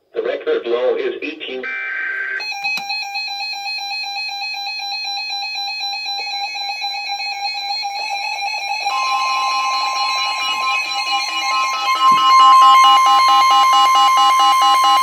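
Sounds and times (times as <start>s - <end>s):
steady electronic alarm tone: 1.6s - 15.0s
higher steady warning tone: 5.2s - 15.0s.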